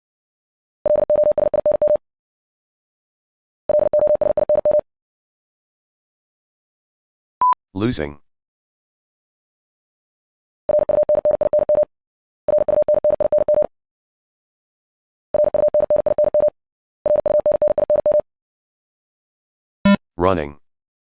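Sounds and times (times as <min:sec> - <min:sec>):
morse code beeps: 0:00.9 - 0:02.0, 0:03.7 - 0:04.8, 0:10.7 - 0:11.9, 0:12.5 - 0:13.7, 0:15.4 - 0:16.5, 0:17.1 - 0:18.2.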